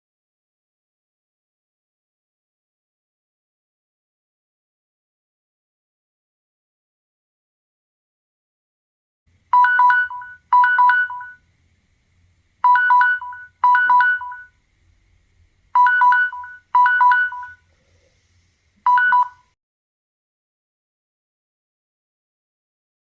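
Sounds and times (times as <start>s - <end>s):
timer alarm electronic beeps: 9.6s - 11.4s, 12.6s - 14.6s, 15.8s - 17.6s, 18.9s - 19.5s.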